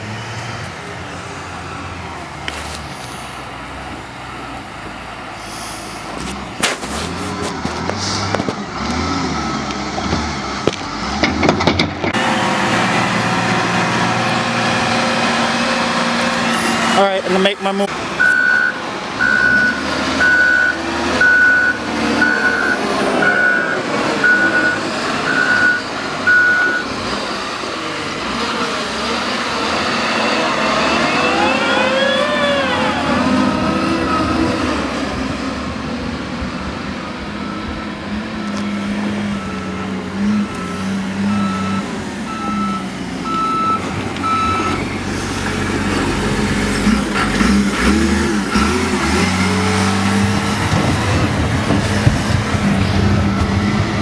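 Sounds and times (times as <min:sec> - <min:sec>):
truck engines running: 0:00.0 - 0:54.0
vehicle backup alarm beeps: 0:16.5 - 0:27.5, 0:30.9 - 0:34.6, 0:37.2 - 0:45.0.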